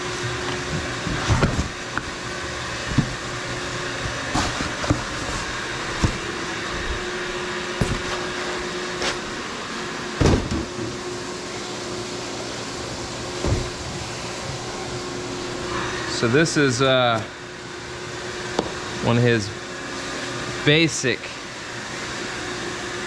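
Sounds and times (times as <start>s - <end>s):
cnc machine whirring: 0.0s - 23.0s
knocks and thumps of handling: 0.5s - 2.2s, 2.8s - 7.2s, 7.8s - 9.4s, 10.2s - 11.0s.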